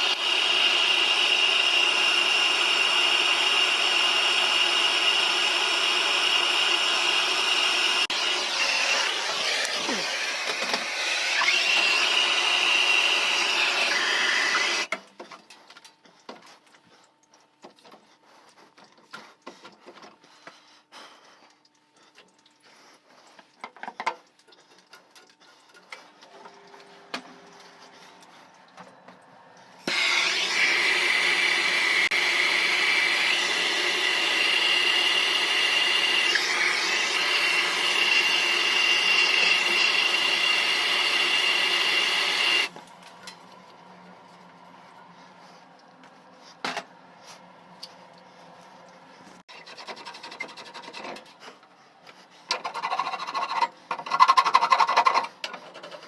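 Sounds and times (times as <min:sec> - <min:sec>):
motor whining: 0:00.0 - 0:14.9.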